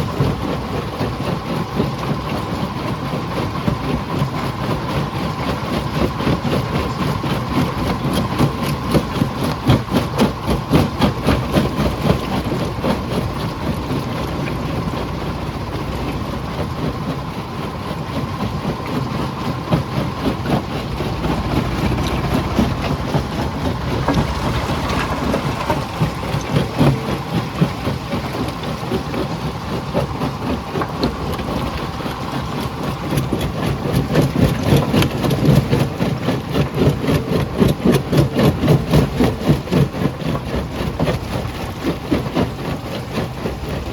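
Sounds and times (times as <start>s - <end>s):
crusher machine hum: 0.0s - 43.9s
rocks clattering and cracking: 21.1s - 42.4s.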